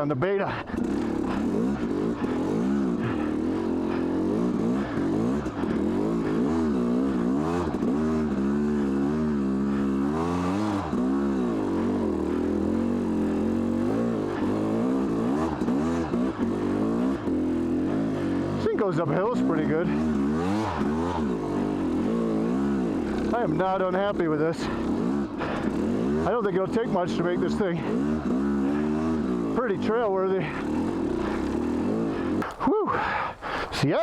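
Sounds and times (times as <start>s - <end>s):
two-stroke engine revving: 0.0s - 33.6s.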